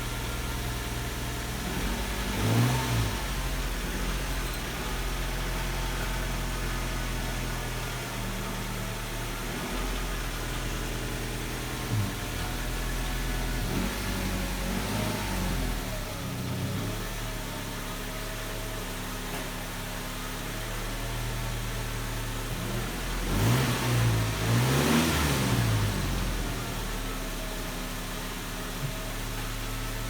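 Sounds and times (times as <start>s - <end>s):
engine lifter ticking: 0.0s - 17.4s
car engine idling: 0.0s - 30.0s.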